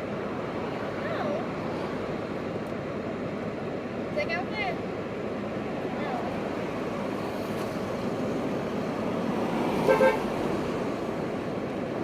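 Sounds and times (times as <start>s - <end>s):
street traffic noise: 0.0s - 12.0s
car horn toots: 9.9s - 10.2s.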